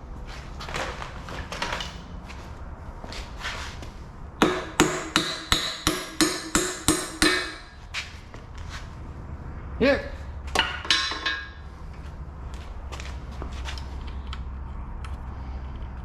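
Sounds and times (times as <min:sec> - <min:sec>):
hammer striking metal: 0:04.4 - 0:07.8, 0:10.6 - 0:11.7.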